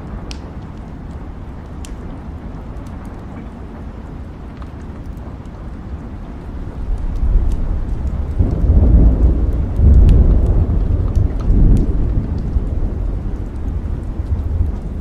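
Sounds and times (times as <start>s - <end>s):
steady rain: 0.0s - 15.0s
sharp crackles: 0.1s - 15.0s
thunder rumbling: 6.5s - 15.0s.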